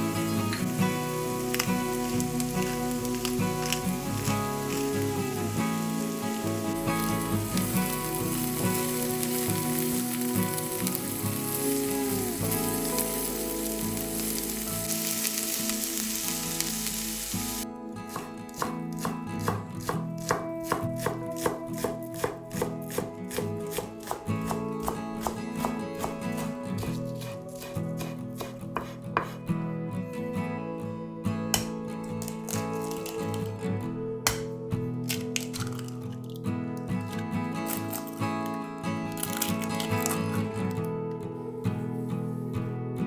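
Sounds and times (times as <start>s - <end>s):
food sizzling in a pan: 0.0s - 29.4s
background music: 0.0s - 43.0s
knife chopping on a board: 18.1s - 29.4s, 34.3s - 34.5s.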